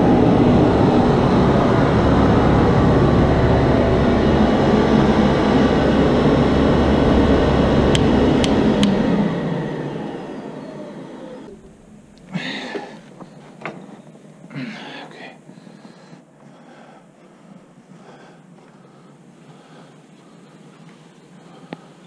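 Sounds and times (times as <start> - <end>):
vacuum motor running: 0.0 - 13.8.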